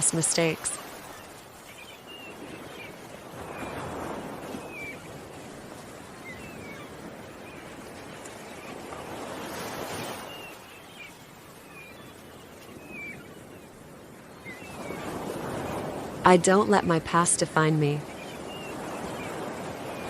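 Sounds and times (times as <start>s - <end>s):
ocean waves breaking: 0.0s - 20.0s.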